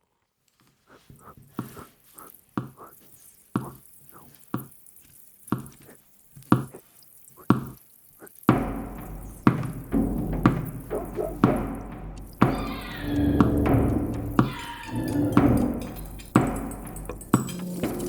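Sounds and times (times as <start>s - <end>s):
rhythmic knocks: 5.5s - 18.0s.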